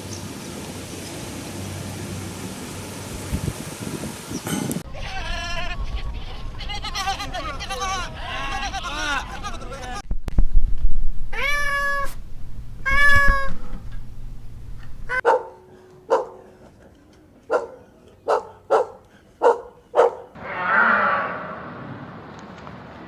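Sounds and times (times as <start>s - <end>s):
cat meowing: 11.3s - 12.2s, 12.8s - 13.6s.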